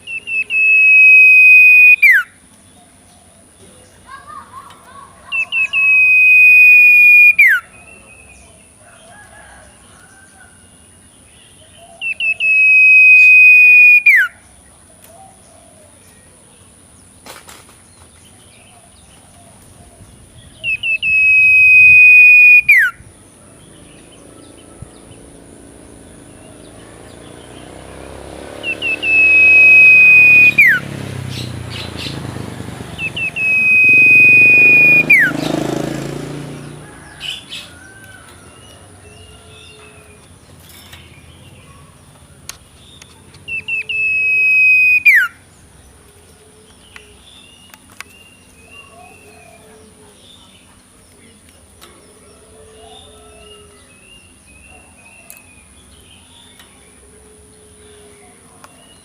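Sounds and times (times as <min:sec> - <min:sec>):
owlet whistled calls: 0:00.0 - 0:02.4, 0:05.3 - 0:08.0, 0:12.0 - 0:14.4, 0:20.5 - 0:23.1, 0:28.6 - 0:32.1, 0:33.0 - 0:35.5, 0:43.5 - 0:45.4.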